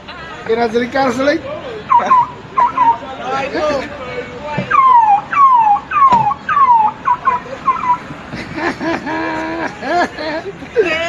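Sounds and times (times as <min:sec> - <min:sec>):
man imitating a siren: 0:01.9 - 0:03.0, 0:04.7 - 0:08.0.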